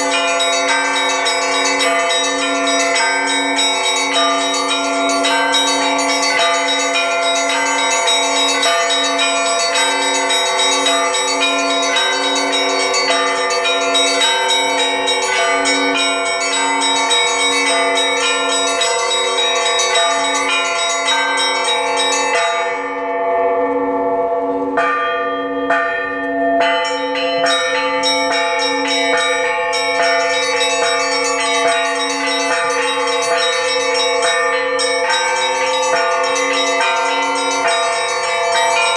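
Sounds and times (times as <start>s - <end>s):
small bells ringing quickly: 0.0s - 22.9s, 26.6s - 38.9s
low church bell striking: 0.0s - 38.9s.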